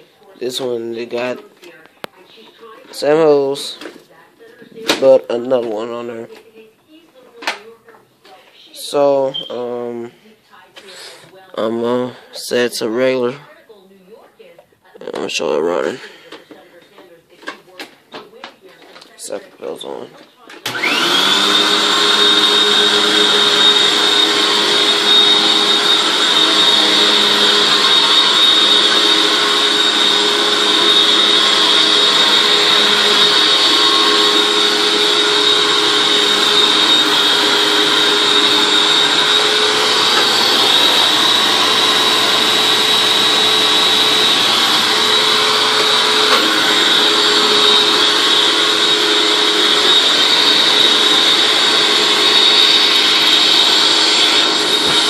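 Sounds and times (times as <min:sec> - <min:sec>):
vacuum cleaner running: 0:00.0 - 0:01.5, 0:02.4 - 0:04.0, 0:08.8 - 0:10.1, 0:20.6 - 0:55.0.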